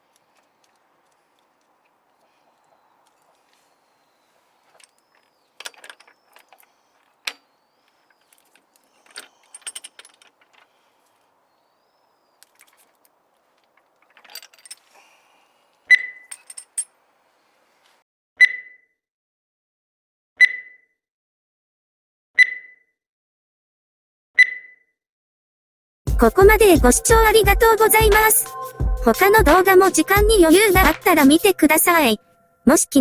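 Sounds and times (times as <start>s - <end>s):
small metal objects jangling: 4.6s - 10.8s, 12.4s - 14.9s, 16.2s - 17.0s.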